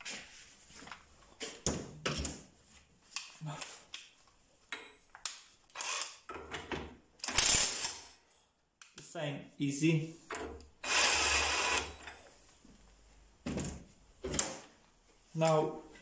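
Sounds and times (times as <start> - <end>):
impact wrench burst: 7.2 - 8.1, 10.8 - 12.0.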